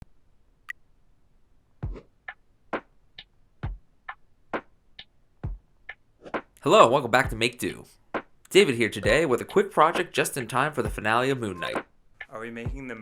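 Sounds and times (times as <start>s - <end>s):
low kick drum: 3.6s - 3.8s, 5.4s - 5.6s, 9.0s - 9.3s, 10.9s - 11.8s, 12.6s - 13.0s.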